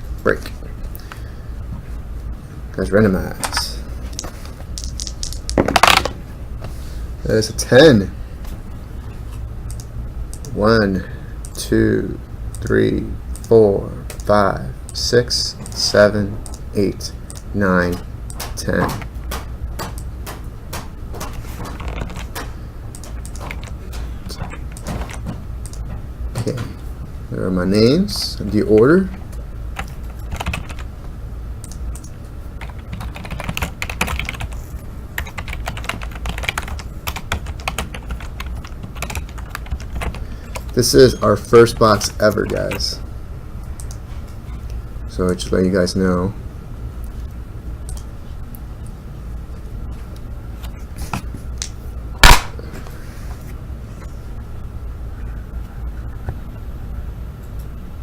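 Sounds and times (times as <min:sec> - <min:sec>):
steady low hum: 0:00.0 - 0:58.0
typing on computer keyboard: 0:18.3 - 0:25.8, 0:29.8 - 0:30.8, 0:31.6 - 0:34.6, 0:35.2 - 0:40.7.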